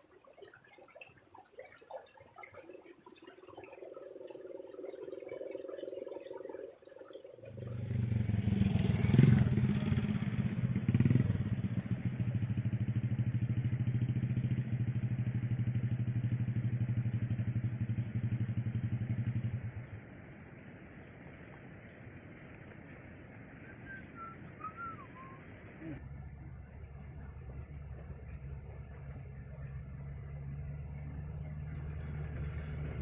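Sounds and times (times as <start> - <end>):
small engine running: 7.6 - 20.2.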